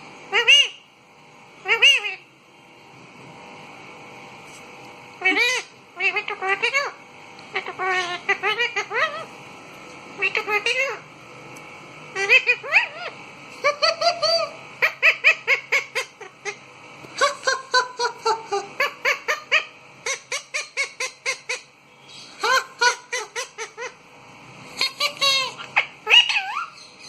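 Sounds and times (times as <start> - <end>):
parakeet calling: 0.3 - 0.9, 1.6 - 2.3, 5.2 - 9.4, 10.1 - 11.2, 12.1 - 27.0.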